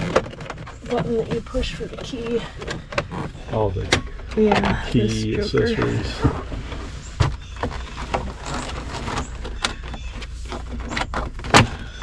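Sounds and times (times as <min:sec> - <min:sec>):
plastic parts clicking and knocking: 0:00.0 - 0:04.8, 0:07.2 - 0:12.0
low steady hum: 0:00.0 - 0:12.0.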